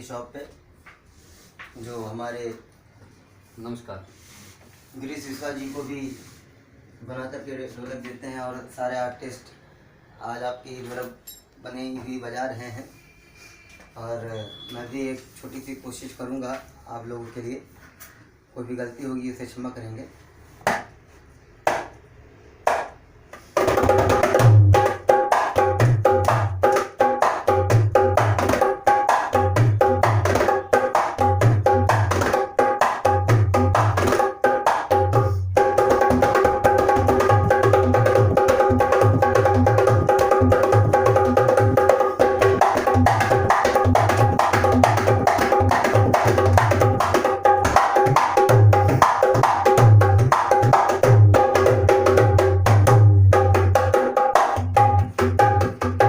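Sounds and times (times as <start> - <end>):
barrel drum fast rhythm: 23.6 - 56.0.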